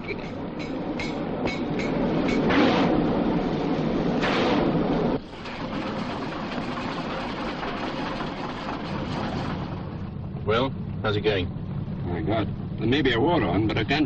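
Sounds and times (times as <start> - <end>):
mechanical rumble and clatter: 0.0 - 14.0
steady quieter mechanical noise: 0.0 - 14.0.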